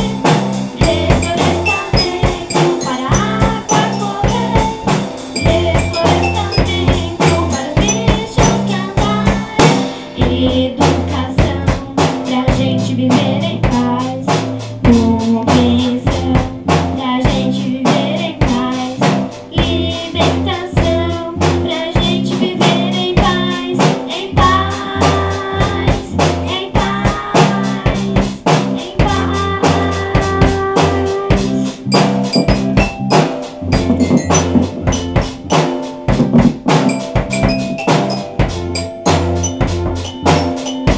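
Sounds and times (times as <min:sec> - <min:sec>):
drum kit beat: 0:00.0 - 0:40.9
school band playing: 0:00.8 - 0:10.1, 0:31.9 - 0:40.9.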